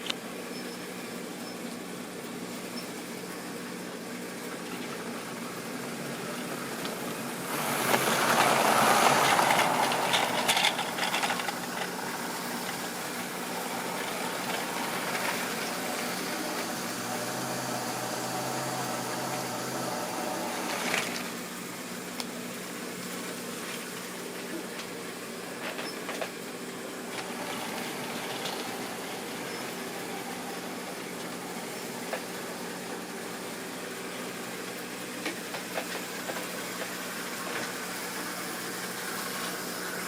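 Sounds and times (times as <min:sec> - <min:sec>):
wheels rumbling over rails: 0:02.6 - 0:40.0
electric motor humming: 0:06.2 - 0:21.9, 0:27.0 - 0:33.8.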